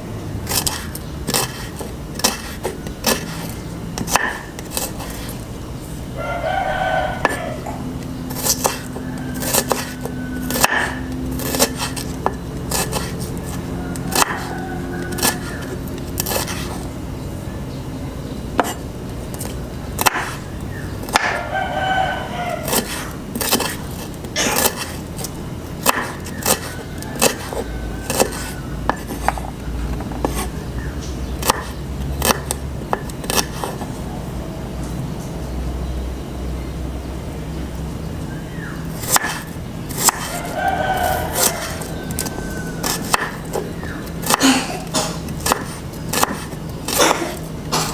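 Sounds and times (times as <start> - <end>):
rooster crowing: 6.1 - 17.0, 20.4 - 23.8, 25.9 - 30.1, 38.3 - 44.2.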